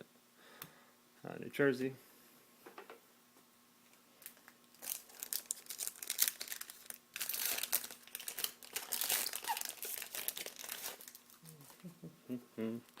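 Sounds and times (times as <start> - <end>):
foil wrapper tearing and crinkling: 4.2 - 11.4.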